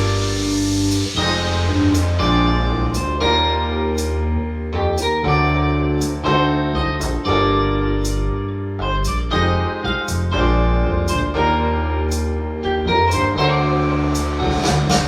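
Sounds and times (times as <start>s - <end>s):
sharp cymbal-like hit: 0.0s - 5.0s
electric piano chords: 0.0s - 15.0s
steady bass line: 0.0s - 15.0s.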